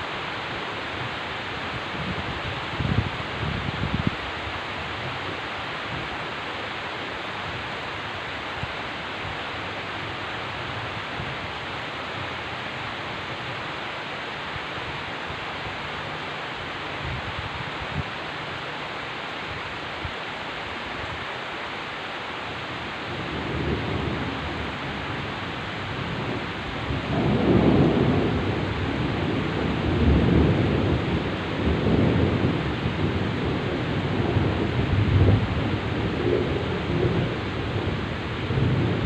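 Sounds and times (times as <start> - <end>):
heavy rain falling: 0.0 - 39.0
thunder rumbling: 23.0 - 39.0.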